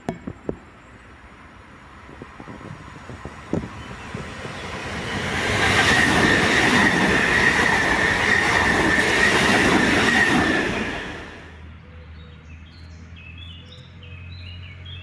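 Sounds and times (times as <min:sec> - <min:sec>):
train running: 0:00.0 - 0:11.7
wheels squealing on rails: 0:00.8 - 0:11.7.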